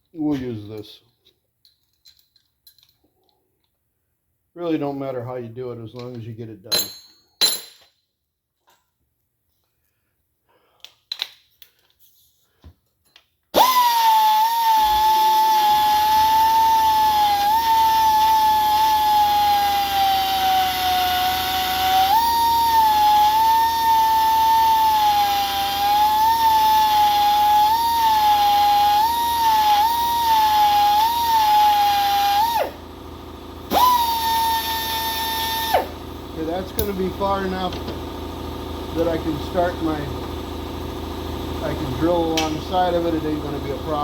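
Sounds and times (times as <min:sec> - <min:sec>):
die grinder whining: 0:13.6 - 0:44.0.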